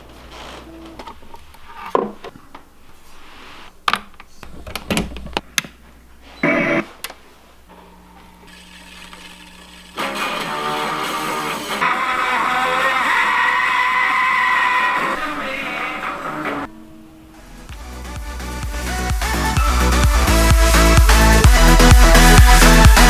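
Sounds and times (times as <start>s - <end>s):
guitar background music: 10.0s - 16.7s.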